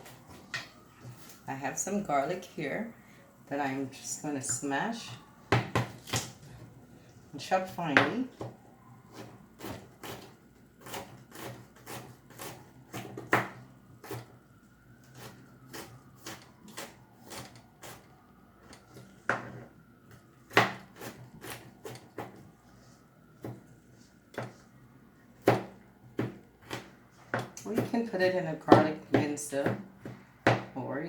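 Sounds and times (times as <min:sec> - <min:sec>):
knife chopping on cutting board: 0:25.4 - 0:27.9.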